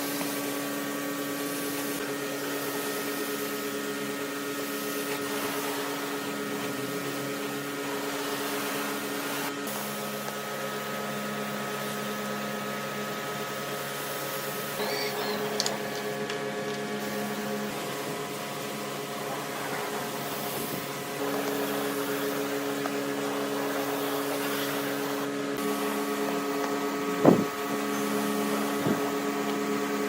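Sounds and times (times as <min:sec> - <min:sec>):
steady mechanical hum: 0:00.0 - 0:30.0.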